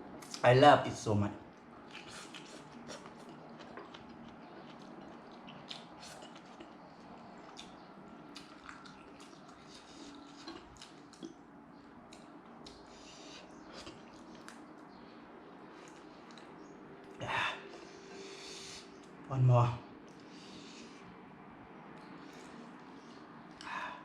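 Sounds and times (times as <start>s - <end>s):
person chewing food: 1.5s - 15.0s, 15.6s - 19.2s.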